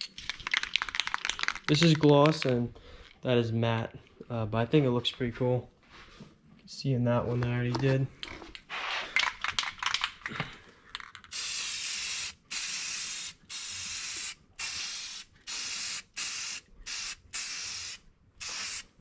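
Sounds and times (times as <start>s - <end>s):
aerosol can spraying: 11.3s - 18.9s.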